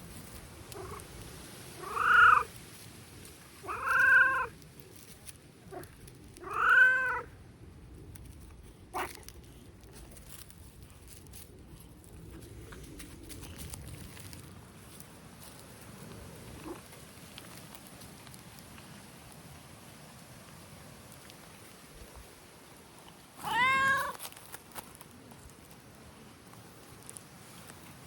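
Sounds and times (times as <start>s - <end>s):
cat meowing: 1.8s - 2.5s, 3.6s - 4.5s, 6.4s - 7.3s, 23.4s - 24.2s.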